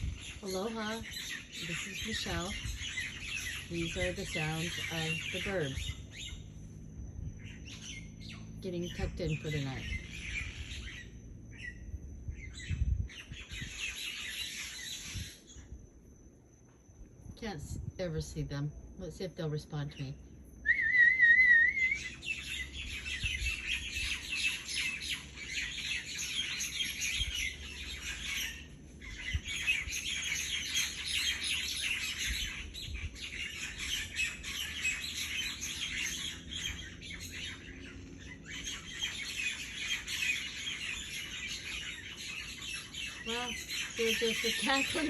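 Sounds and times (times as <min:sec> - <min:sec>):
myna birds cackling: 0:00.0 - 0:15.6, 0:21.9 - 0:45.0
person whistling: 0:20.7 - 0:22.0.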